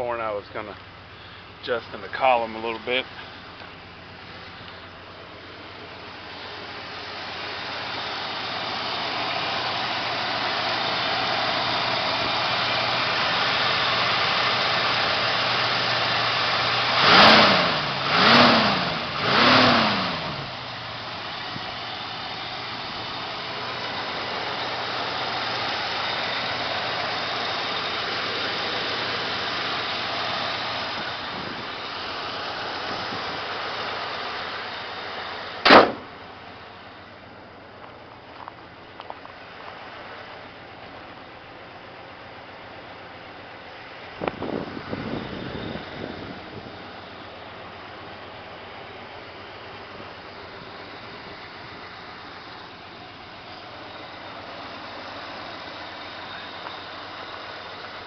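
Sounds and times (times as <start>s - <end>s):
car engine revving: 2.6s - 36.2s
sharp knock: 35.6s - 36.1s.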